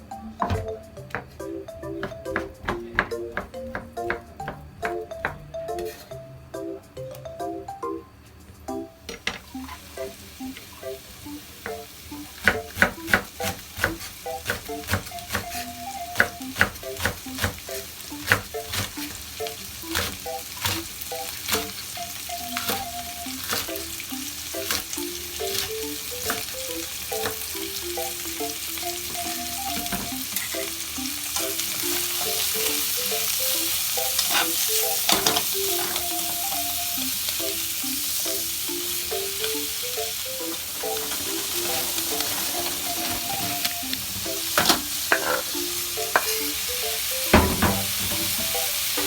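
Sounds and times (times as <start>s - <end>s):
light background melody: 0.0s - 49.0s
spatula scraping a pan: 5.7s - 6.2s, 34.2s - 36.1s, 40.7s - 43.8s, 44.5s - 46.5s
stir-fry sizzling in a pan: 8.9s - 49.0s.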